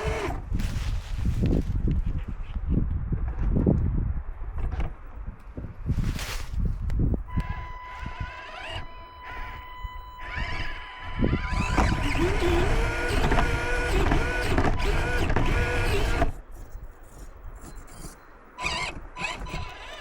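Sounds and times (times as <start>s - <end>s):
small electric motor whining: 0.0s - 0.4s, 7.3s - 20.0s.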